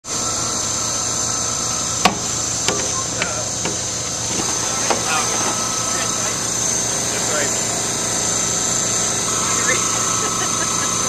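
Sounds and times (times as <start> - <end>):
steady high whine: 0.0 - 11.0
low hum: 0.1 - 11.0
sharp knocks: 2.0 - 6.2.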